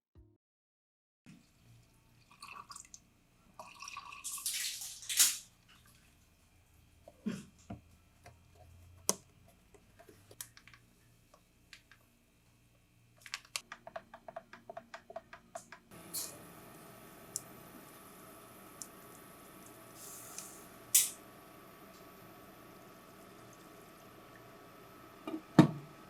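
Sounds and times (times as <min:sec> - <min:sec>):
liquid pouring: 0:02.2 - 0:03.0, 0:03.6 - 0:06.0.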